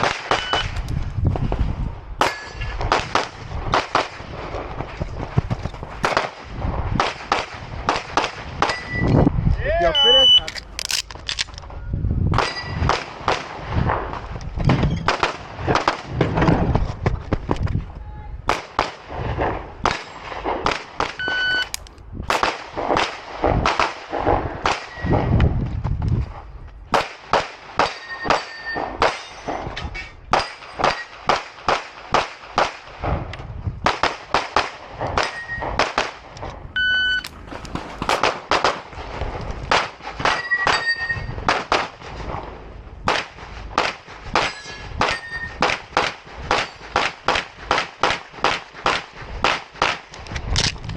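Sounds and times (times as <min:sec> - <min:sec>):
short beeps: 0:00.3 - 0:00.8, 0:09.9 - 0:10.5, 0:21.2 - 0:21.8, 0:36.8 - 0:37.3
ringing metal tones: 0:02.2 - 0:02.8, 0:27.9 - 0:31.1, 0:40.3 - 0:41.4, 0:44.4 - 0:45.6
rapid pistol fire: 0:37.3 - 0:40.4, 0:43.1 - 0:50.0.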